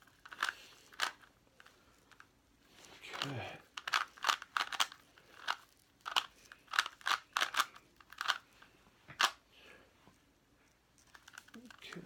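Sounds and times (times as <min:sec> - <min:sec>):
plastic puzzle cube clacking: 0:00.0 - 0:02.3, 0:03.1 - 0:09.4, 0:11.0 - 0:12.0.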